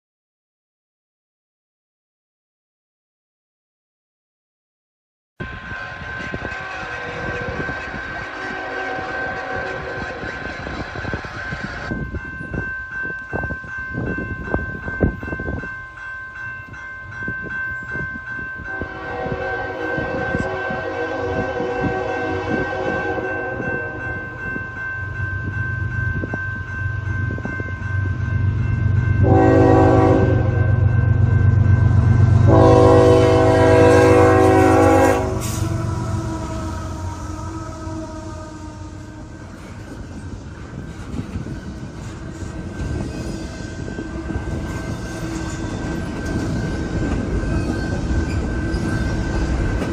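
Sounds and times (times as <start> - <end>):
locomotive air horn blasts: 5.8 - 10.5, 18.7 - 24.2, 29.2 - 30.8, 32.4 - 39.6.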